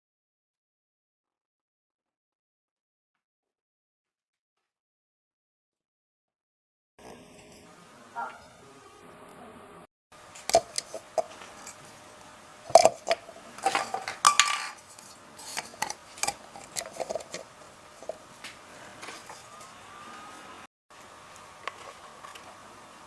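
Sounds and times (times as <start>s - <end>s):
hard objects clinking: 12.7s - 18.2s.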